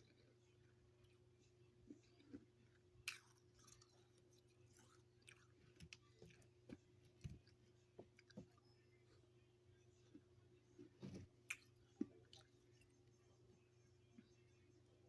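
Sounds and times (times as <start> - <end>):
person chewing frost: 0.0 - 9.2, 9.9 - 13.2.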